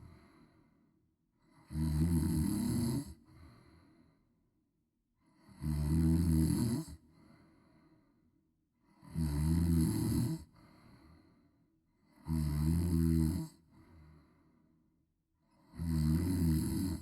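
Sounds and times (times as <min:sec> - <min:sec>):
woman snoring loudly: 0:01.7 - 0:03.1, 0:05.4 - 0:06.9, 0:09.0 - 0:10.4, 0:15.8 - 0:17.0.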